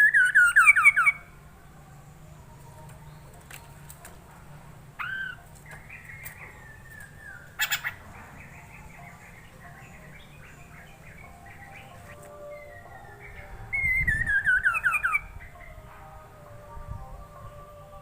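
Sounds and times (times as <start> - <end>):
bird singing whistled notes: 0.0 - 1.3, 5.0 - 15.9
harsh bird call: 5.0 - 8.0.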